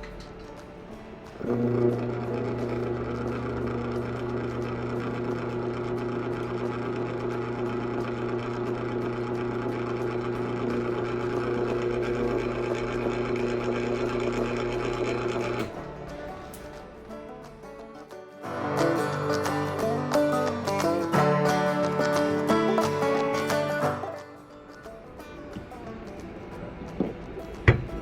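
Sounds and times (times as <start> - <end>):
small geared motor whirring: 1.4 - 15.7.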